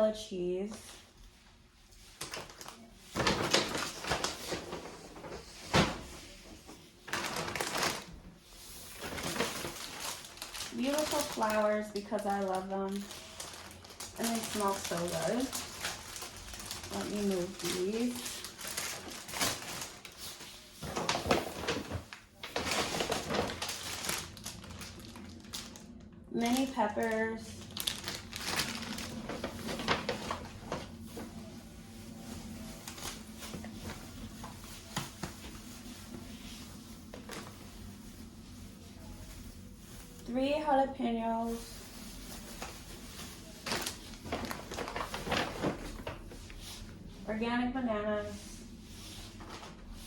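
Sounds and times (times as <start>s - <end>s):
packaging rustling: 2.1s - 6.1s, 7.0s - 40.3s, 41.4s - 46.9s
groceries clattering: 2.2s - 6.2s, 7.0s - 8.2s, 8.9s - 31.6s, 41.5s - 46.4s.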